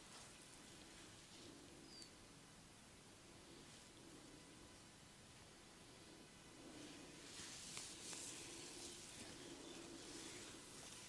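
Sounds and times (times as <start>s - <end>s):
fingers rustling in hair: 6.8s - 11.0s.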